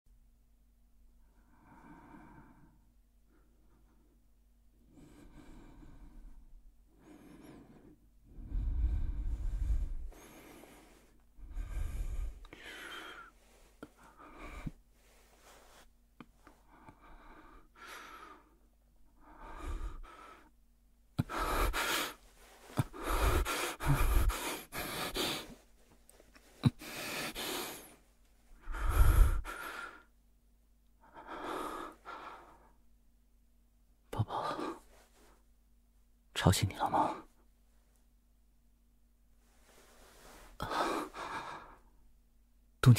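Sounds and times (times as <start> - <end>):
man breathing heavily and gasping: 4.8 - 30.2, 31.0 - 32.8, 40.0 - 42.0.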